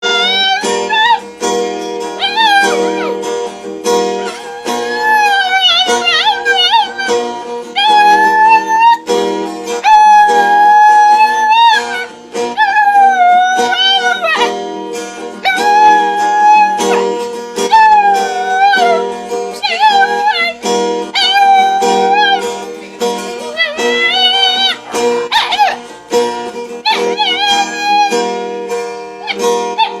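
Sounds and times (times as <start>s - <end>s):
dog howling: 0.0s - 1.2s, 2.2s - 3.2s, 4.0s - 7.2s, 7.8s - 9.1s, 9.8s - 14.6s, 15.4s - 22.6s, 23.5s - 25.9s, 26.8s - 28.3s, 29.2s - 30.0s
instrumental music: 0.0s - 30.0s.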